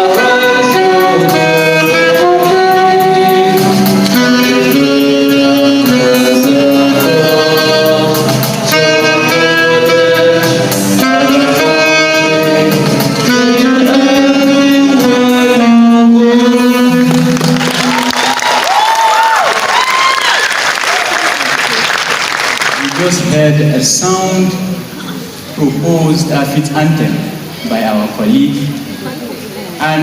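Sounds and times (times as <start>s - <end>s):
instrumental melody of held notes: 0.0s - 18.1s.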